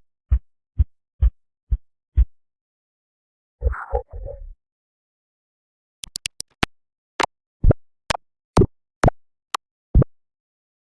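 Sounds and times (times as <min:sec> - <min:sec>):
cartoon pops: 0:06.0 - 0:06.7.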